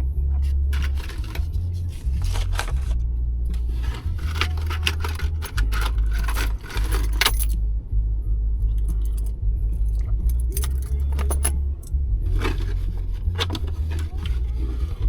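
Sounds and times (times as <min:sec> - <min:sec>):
low steady rumble: 0:00.0 - 0:15.0
keys jangling: 0:00.7 - 0:01.5, 0:03.8 - 0:07.6, 0:09.0 - 0:11.6.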